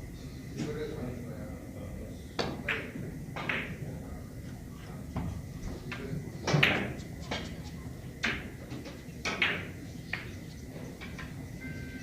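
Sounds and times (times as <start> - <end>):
low room hum: 0.0 - 12.0
billiard balls clicking: 6.4 - 11.5.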